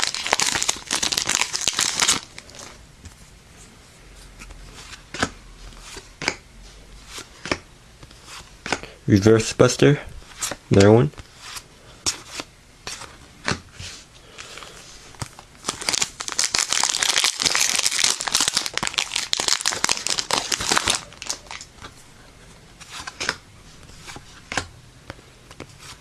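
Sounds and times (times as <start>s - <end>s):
foil wrapper crinkling and tearing: 0.0s - 2.7s, 15.3s - 21.7s.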